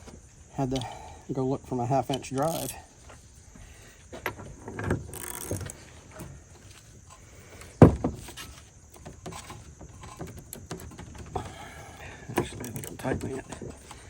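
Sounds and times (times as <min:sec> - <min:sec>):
socket wrench working a bolt: 0:02.0 - 0:02.8, 0:04.6 - 0:05.9
metal hand tools clinking: 0:02.1 - 0:02.8.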